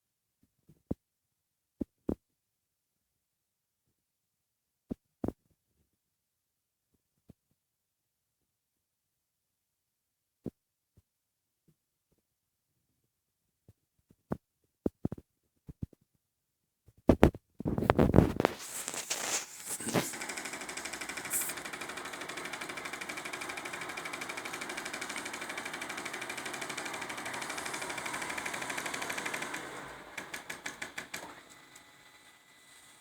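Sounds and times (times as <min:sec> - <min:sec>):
loud clicks: 0:18.9 - 0:31.9.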